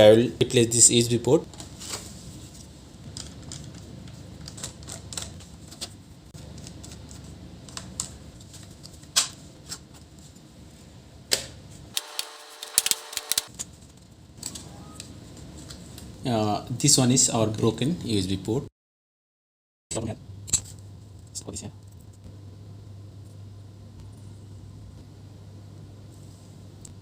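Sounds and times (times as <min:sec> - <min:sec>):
small tools clicking on plastic: 0:12.0 - 0:13.5.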